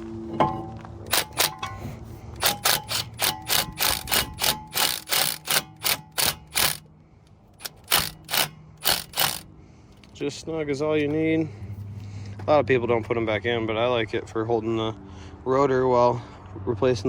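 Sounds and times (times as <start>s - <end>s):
impact driver rattling: 0.3s - 6.9s, 7.6s - 10.2s.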